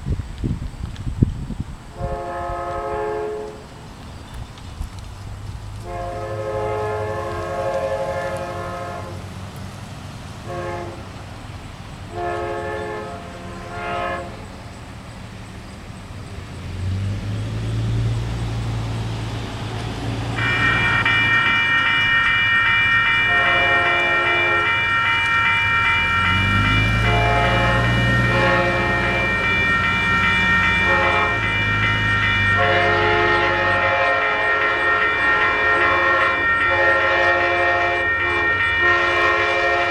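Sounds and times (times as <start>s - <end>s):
diesel locomotive drone: 0.0s - 39.9s
train horn blasts and toots: 1.9s - 3.7s, 5.8s - 9.3s, 10.4s - 11.2s, 12.1s - 14.6s, 20.0s - 39.9s
high-pitched ring of passing train: 5.9s - 9.3s, 12.0s - 15.8s, 17.6s - 39.9s.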